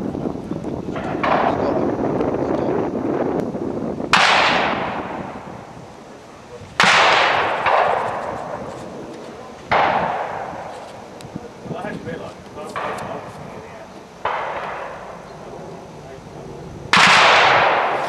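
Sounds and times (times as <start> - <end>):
gunshots with echo: 4.1 - 5.5, 6.8 - 8.6, 9.7 - 10.7, 14.2 - 15.2, 16.9 - 18.0.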